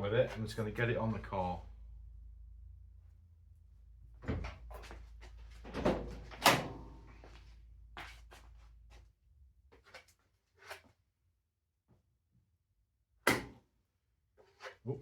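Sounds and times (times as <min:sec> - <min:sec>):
low hum: 0:00.0 - 0:08.0.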